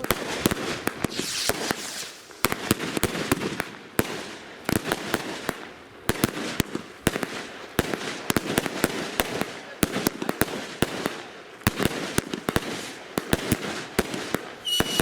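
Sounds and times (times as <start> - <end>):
crackling hiss: 0.0 - 2.7, 14.4 - 15.0
firework sharp bangs: 0.0 - 15.0.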